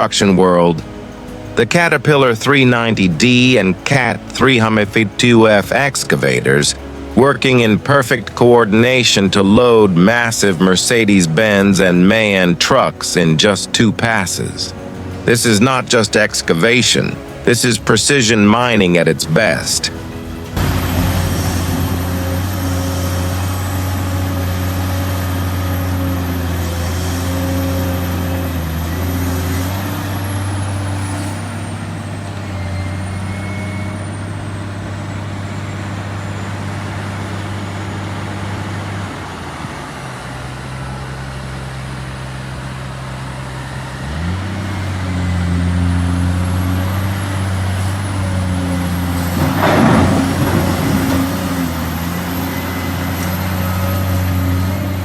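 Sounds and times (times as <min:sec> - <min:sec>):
heavy diesel machinery droning: 0:00.0 - 0:55.0
loud noisy rushing burst: 0:20.4 - 0:24.0.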